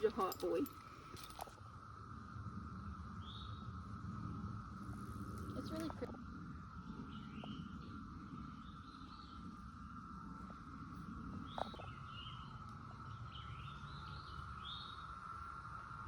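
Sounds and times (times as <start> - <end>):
cicada chorus droning: 0.0 - 16.0
low rumble: 0.0 - 16.0.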